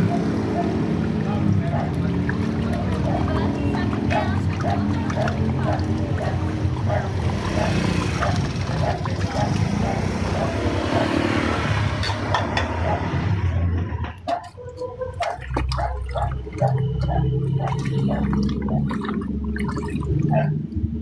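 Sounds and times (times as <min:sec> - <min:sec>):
water gurgling and bubbling: 0:00.0 - 0:12.1, 0:12.8 - 0:21.0
water rushing: 0:00.0 - 0:13.0, 0:14.3 - 0:20.7.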